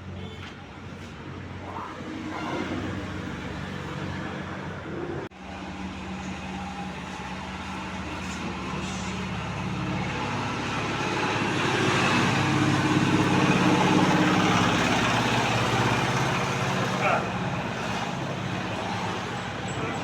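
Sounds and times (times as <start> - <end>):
vehicle engine running: 5.4 - 20.0.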